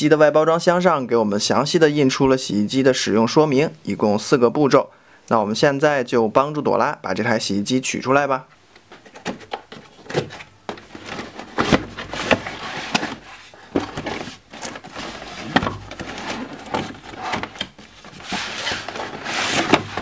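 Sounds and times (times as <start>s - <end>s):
cardboard scraping and rustling: 8.9s - 20.0s.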